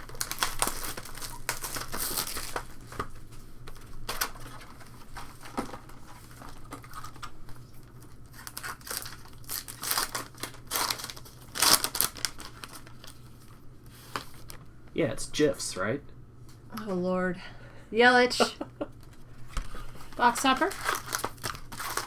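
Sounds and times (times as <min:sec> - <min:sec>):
foil wrappers crinkling and tearing: 0:00.0 - 0:14.6, 0:19.0 - 0:22.0
cards rustling and snapping: 0:00.0 - 0:14.7, 0:19.0 - 0:22.0.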